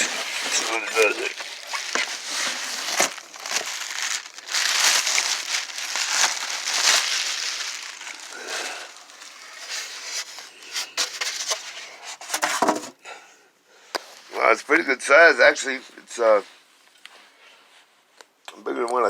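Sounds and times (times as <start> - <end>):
plastic packaging crinkling: 0.0 - 12.7.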